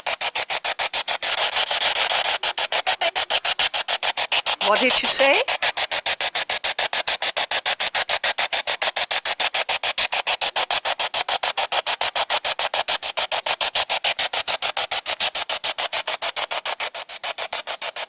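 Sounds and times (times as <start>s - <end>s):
radio static chopping: 1.2s - 5.8s.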